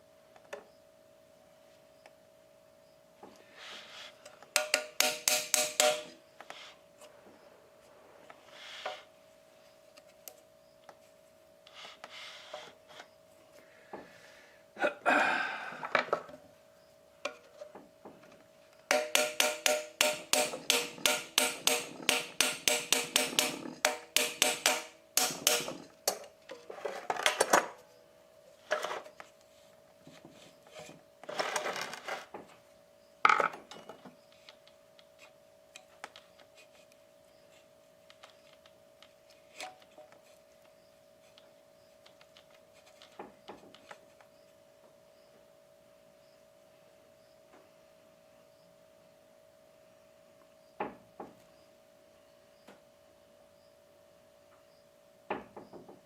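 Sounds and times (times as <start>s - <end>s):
rapid metallic taps: 18.9s - 25.8s
scrapes and knocks: 30.0s - 32.6s.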